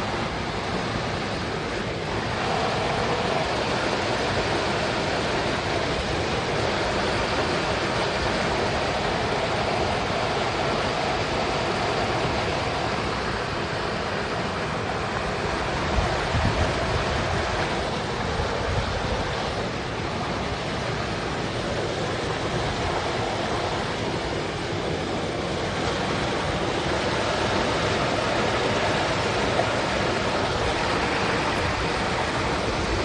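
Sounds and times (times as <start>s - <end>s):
rushing wind: 14.9s - 19.3s
wind buffeting microphone: 15.1s - 19.2s.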